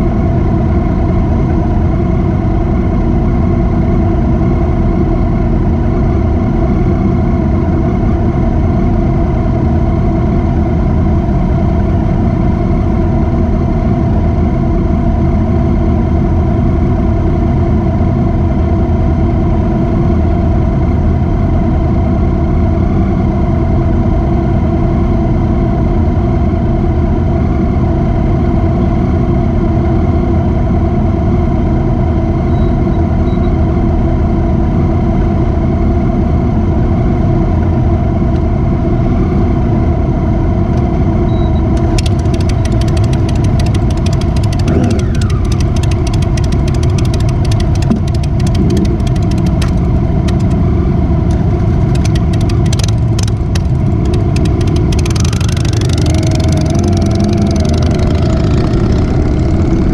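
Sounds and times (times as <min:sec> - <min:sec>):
motorcycle engine running: 0:40.8 - 0:59.9.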